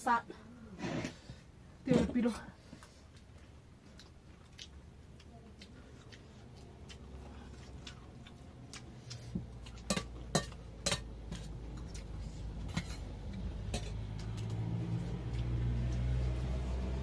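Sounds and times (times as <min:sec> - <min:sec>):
utensils clinking against dishes: 0:09.8 - 0:12.0, 0:12.7 - 0:13.1.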